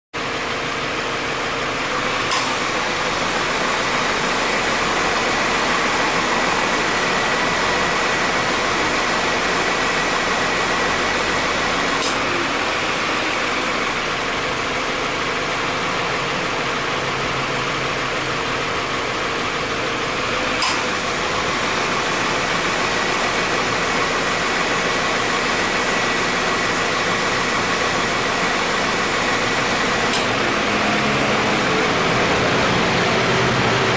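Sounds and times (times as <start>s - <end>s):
air-conditioning compressor running: 0.2s - 33.9s
car engine idling: 0.2s - 33.9s
short click: 2.3s - 2.6s.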